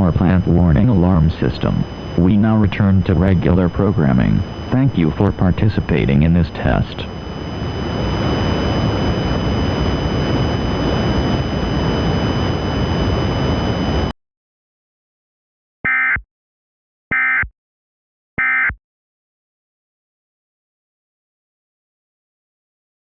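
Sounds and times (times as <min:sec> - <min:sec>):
static noise with high tones: 0:00.0 - 0:14.1.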